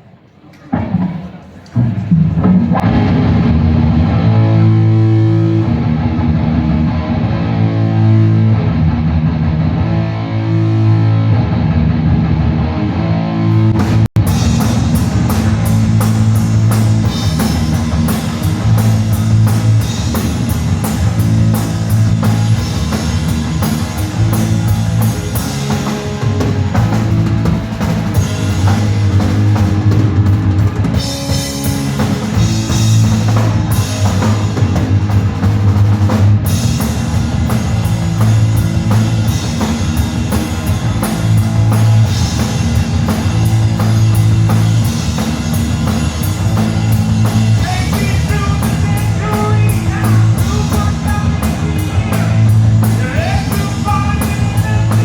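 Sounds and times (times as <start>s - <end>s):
heavy metal band playing: 0.7s - 55.0s.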